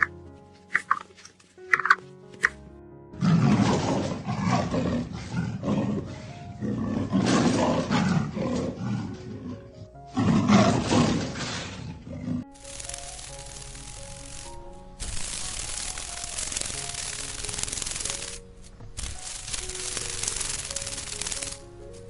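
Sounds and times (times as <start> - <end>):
background music: 0.0 - 22.0
big cat roaring: 3.2 - 12.5.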